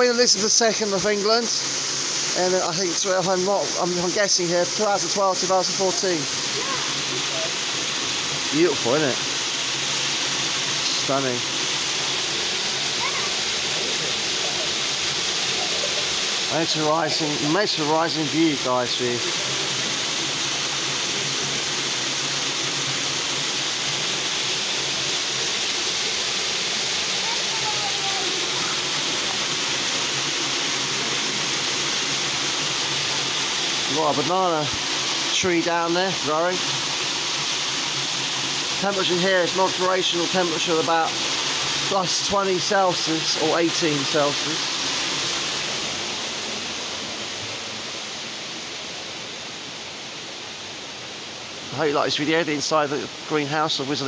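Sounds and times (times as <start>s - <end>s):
indoor waterfall splashing: 0.0s - 54.0s.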